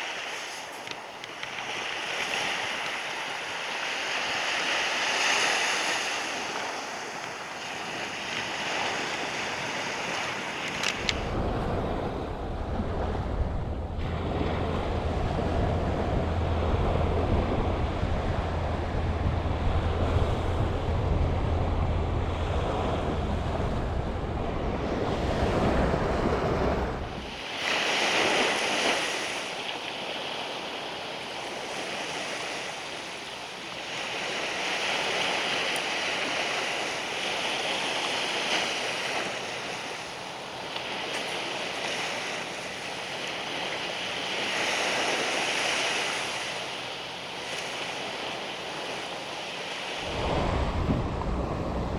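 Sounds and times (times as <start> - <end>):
waves washing onto beach: 0.0 - 51.9
wind buffeting microphone: 6.2 - 29.2, 49.9 - 51.9.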